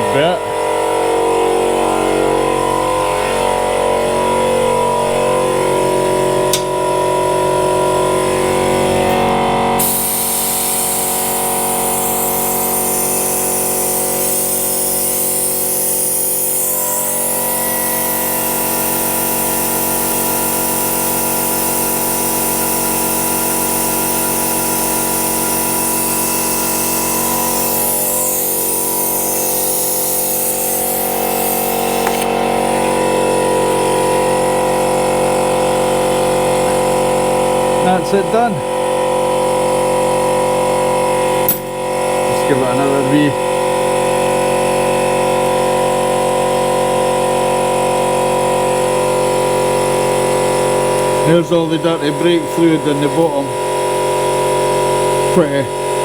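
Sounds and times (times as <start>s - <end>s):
vacuum machine running: 0.0s - 56.0s
strong hiss: 9.8s - 32.3s.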